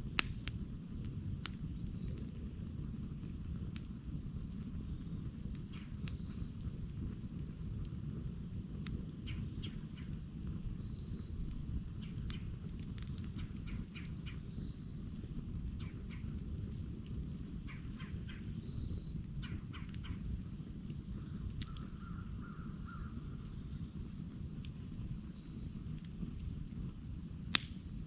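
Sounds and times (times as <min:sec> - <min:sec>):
campfire crackling and popping: 0:00.0 - 0:28.0.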